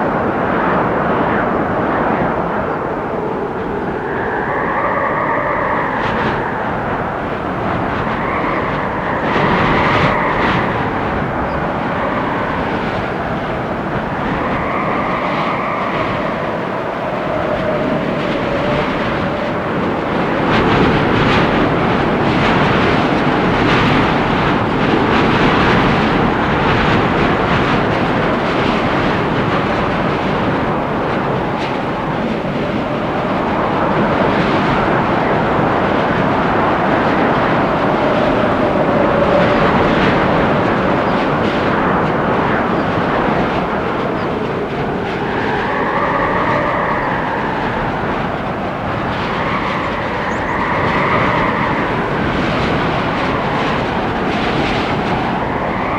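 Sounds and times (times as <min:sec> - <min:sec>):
wind gusting through trees: 0:00.0 - 0:55.9
faint whistling tone: 0:02.1 - 0:21.2, 0:38.0 - 0:53.4.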